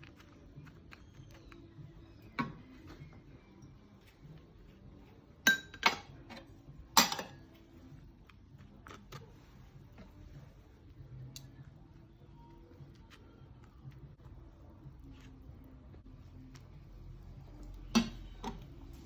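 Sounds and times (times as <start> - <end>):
dishware and utensils clinking: 5.4 - 7.5.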